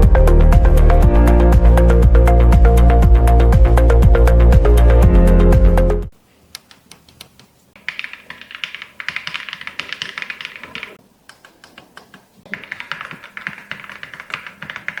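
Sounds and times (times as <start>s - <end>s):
mechanical keyboard typing: 6.6s - 15.0s.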